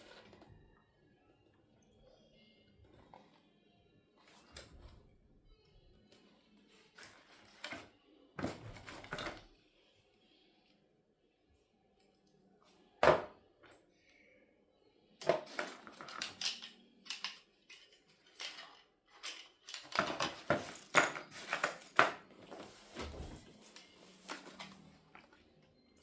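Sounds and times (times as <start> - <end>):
plastic items clicking and rustling: 7.0 - 9.5, 15.2 - 25.4.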